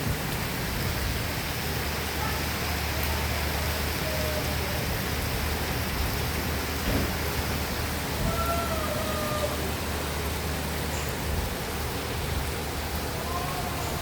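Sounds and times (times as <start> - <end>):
rain falling steadily: 0.0 - 14.0.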